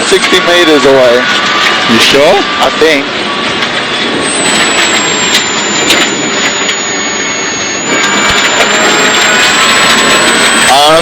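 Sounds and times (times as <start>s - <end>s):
car engine running hard: 0.0s - 11.0s
loud road noise: 0.0s - 11.0s.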